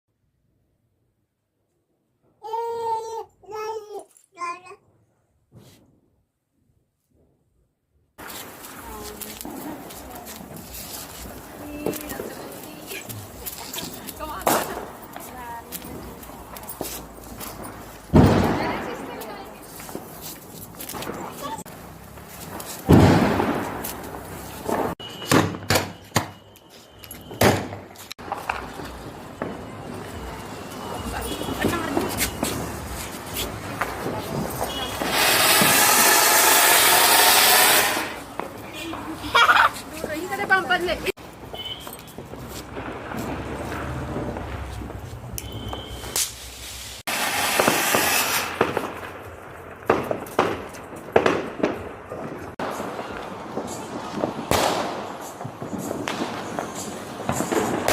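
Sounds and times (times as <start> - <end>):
firecrackers banging: 8.2 - 57.9
thin whistle: 45.4 - 46.2
firecracker pop: 54.2 - 55.1.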